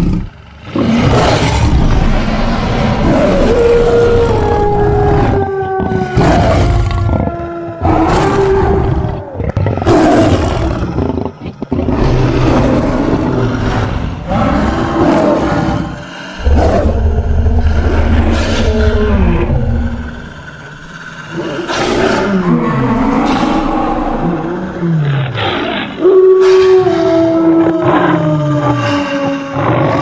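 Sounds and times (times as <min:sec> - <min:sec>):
deep rumble: 0:00.0 - 0:05.6, 0:16.4 - 0:25.4
creature roars and growls: 0:00.0 - 0:30.0.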